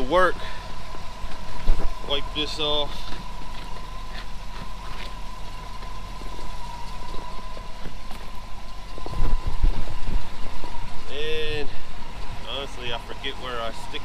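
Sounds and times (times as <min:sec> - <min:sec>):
pickup truck engine idling: 0:00.0 - 0:14.0.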